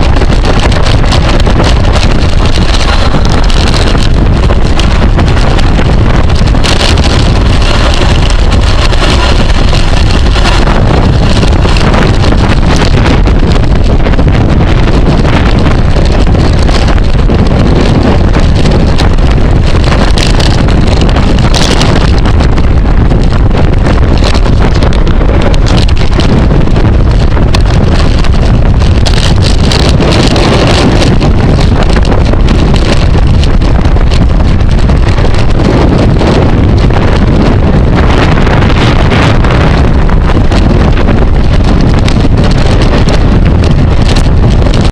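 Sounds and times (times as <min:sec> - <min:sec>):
wind buffeting microphone: 0:00.0 - 0:44.9.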